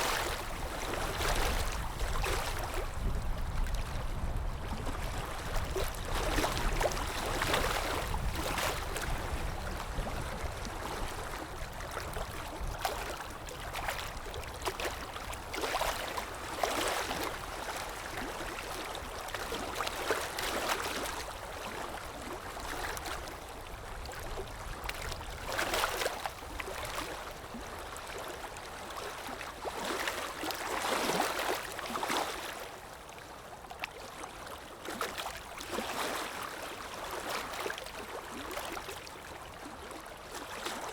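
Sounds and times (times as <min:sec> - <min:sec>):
water flowing and splashing: 0:00.0 - 0:23.3.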